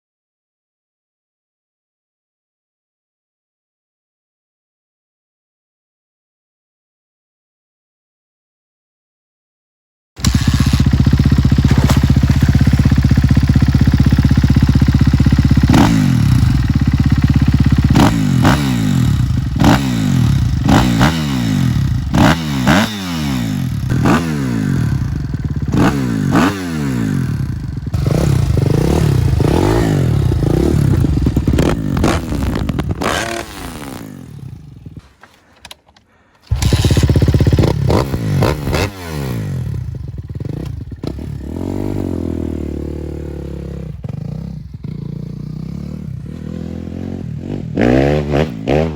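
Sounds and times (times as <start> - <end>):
motocross engine revving: 10.2 - 34.8, 36.5 - 48.9.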